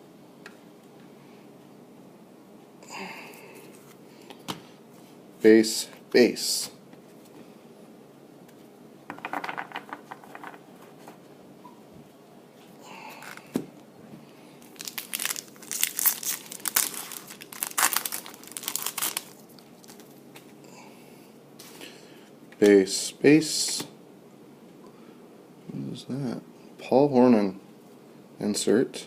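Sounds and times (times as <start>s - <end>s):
wrapper crinkling and tearing: 14.6s - 20.2s.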